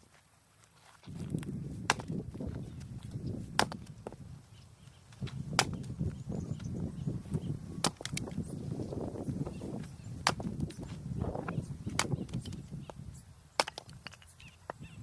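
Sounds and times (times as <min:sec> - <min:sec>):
wood cracking: 0:01.1 - 0:04.2, 0:05.1 - 0:06.0, 0:07.8 - 0:08.4, 0:10.2 - 0:12.7, 0:13.6 - 0:14.3.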